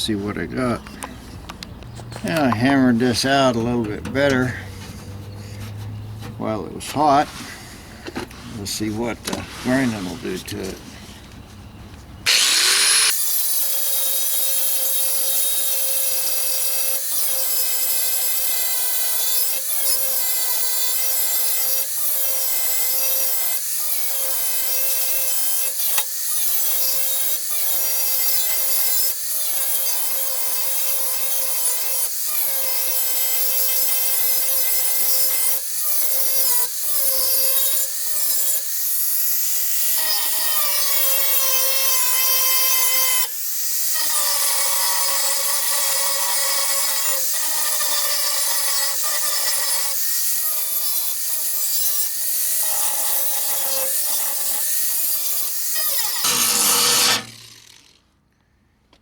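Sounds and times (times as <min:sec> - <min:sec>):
grinder whining on metal: 0:12.3 - 0:58.1.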